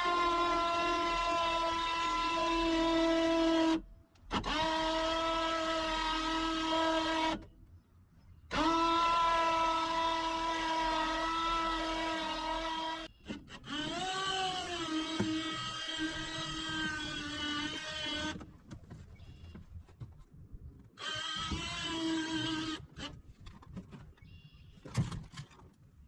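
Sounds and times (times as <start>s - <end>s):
electric motor whining: 8.5s - 18.4s, 21.0s - 23.2s.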